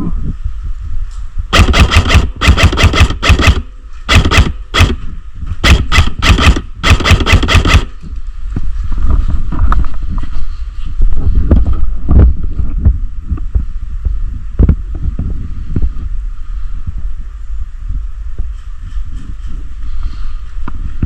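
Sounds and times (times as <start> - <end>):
wind rumble on microphone: 0.0 - 21.0
airsoft gun firing bursts: 1.5 - 8.0.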